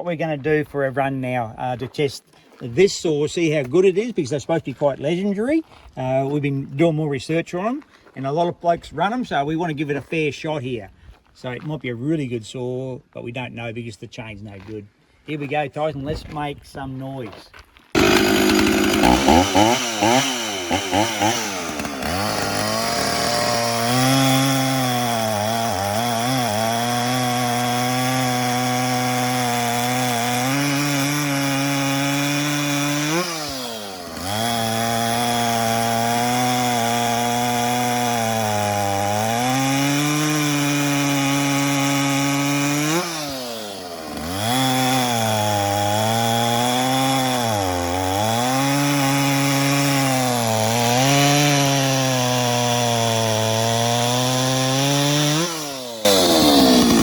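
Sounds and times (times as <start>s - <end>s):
chainsaw cutting wood: 17.9s - 57.0s.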